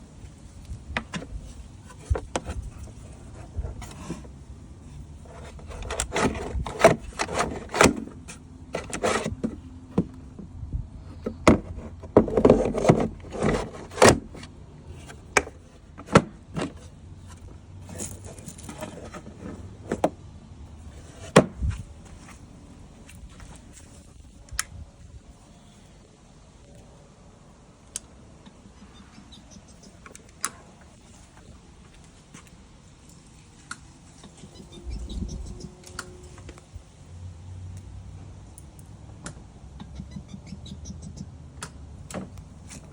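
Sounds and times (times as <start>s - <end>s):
lawn mower clicking and knocking: 5.3s - 10.6s, 11.2s - 20.2s.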